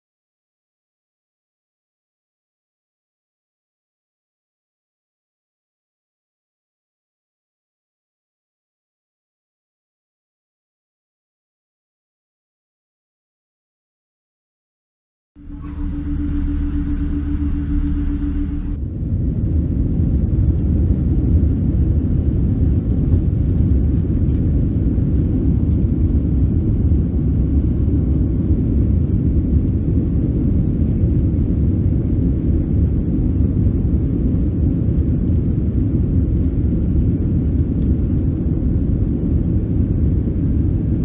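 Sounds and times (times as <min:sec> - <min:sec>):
jet engine rumble in cabin: 0:15.4 - 0:41.0.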